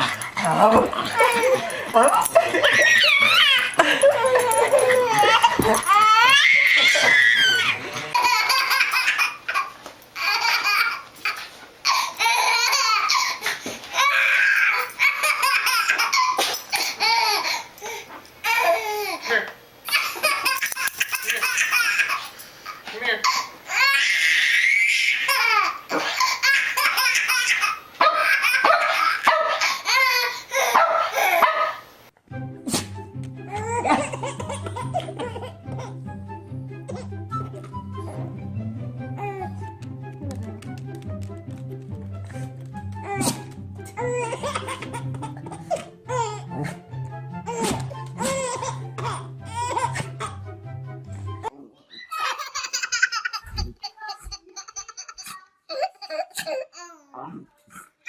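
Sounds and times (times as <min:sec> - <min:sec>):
baby laughing: 0:00.0 - 0:31.5, 0:33.5 - 0:36.0, 0:43.0 - 0:46.7, 0:47.5 - 0:50.4, 0:51.4 - 0:57.1
background music with bass line: 0:32.3 - 0:51.4.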